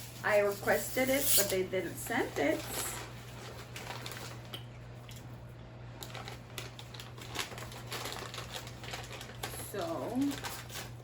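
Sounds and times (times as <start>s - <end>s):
light clicks and crinkles: 6.0s - 11.0s.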